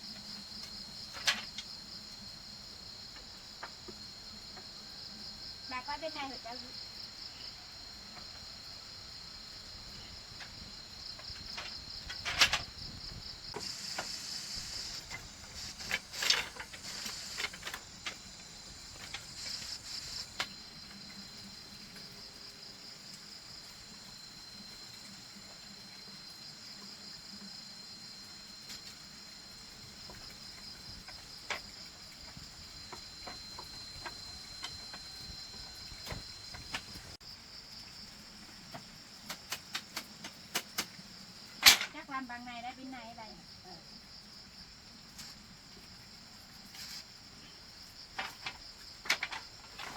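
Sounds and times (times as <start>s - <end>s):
high insect chorus: 0.0s - 49.9s.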